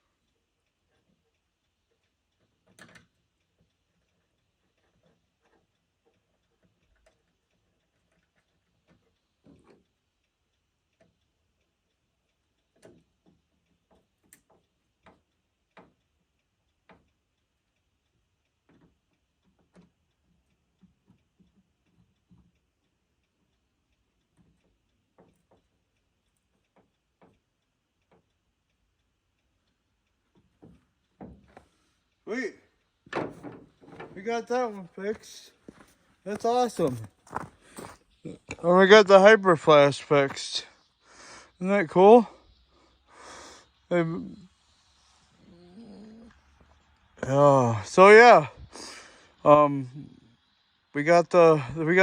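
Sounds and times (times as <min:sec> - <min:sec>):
faint clicks and light knocks: 0:00.0 - 0:38.6.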